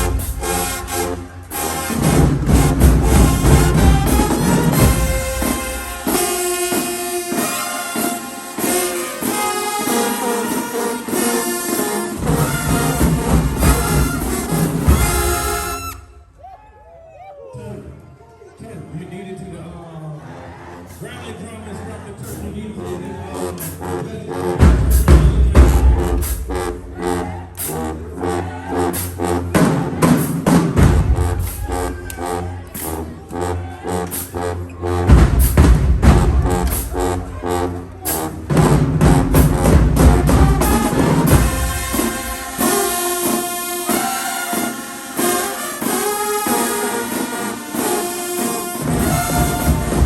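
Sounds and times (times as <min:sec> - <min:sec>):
bass drums: 0:00.0 - 0:01.2, 0:01.9 - 0:06.2, 0:12.2 - 0:15.7, 0:24.6 - 0:27.1, 0:29.4 - 0:33.1, 0:35.0 - 0:42.9, 0:48.8 - 0:50.0
marching band playing: 0:00.0 - 0:16.4, 0:22.6 - 0:50.0.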